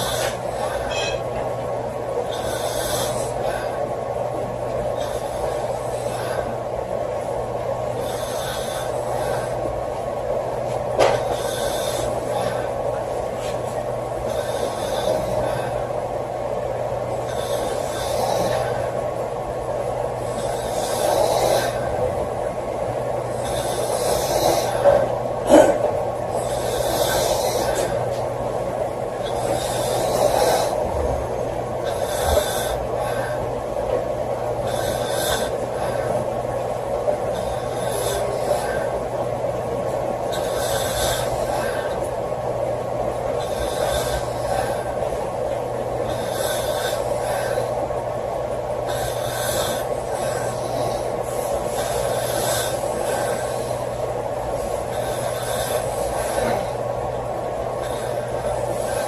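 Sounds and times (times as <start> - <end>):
steady low hum: 0.0 - 59.0
woman snoring: 7.9 - 9.6, 14.2 - 15.9, 17.2 - 19.0, 20.2 - 22.0, 23.2 - 28.1, 29.1 - 31.0, 31.8 - 33.4, 34.6 - 36.2, 37.3 - 39.1, 40.4 - 42.0, 43.4 - 45.0, 46.0 - 47.8, 48.8 - 54.0, 54.7 - 56.9, 57.7 - 59.0.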